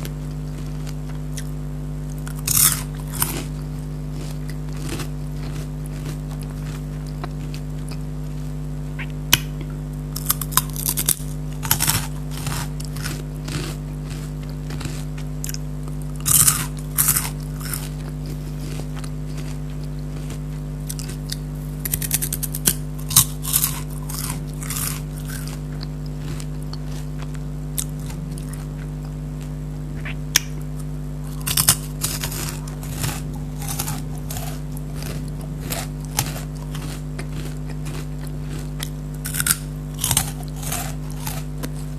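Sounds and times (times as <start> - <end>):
crunchy snacks being chewed: 0.0 - 41.9
steady low hum: 0.0 - 41.9.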